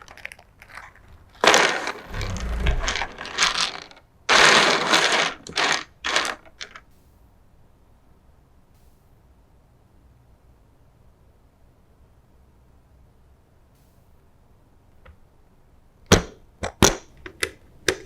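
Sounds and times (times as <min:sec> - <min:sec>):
packaging rustling: 0:00.0 - 0:06.8
plastic parts rattling: 0:00.0 - 0:06.9
low thump: 0:02.0 - 0:03.2.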